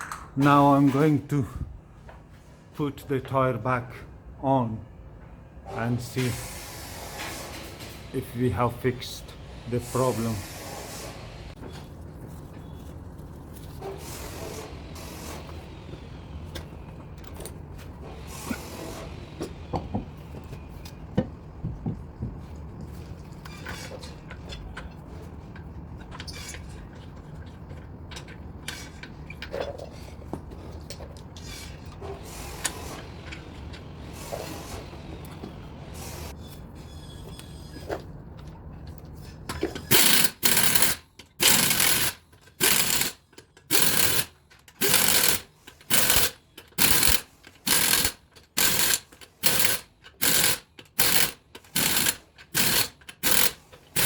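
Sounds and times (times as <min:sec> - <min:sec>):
impact wrench rattling: 0:39.8 - 0:54.0.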